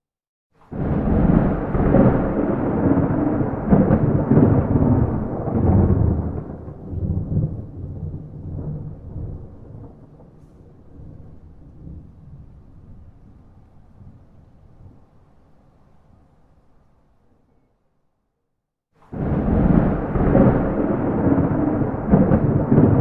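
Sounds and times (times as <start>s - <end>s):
thunderclap rumbling: 0.7s - 15.0s, 19.1s - 23.0s.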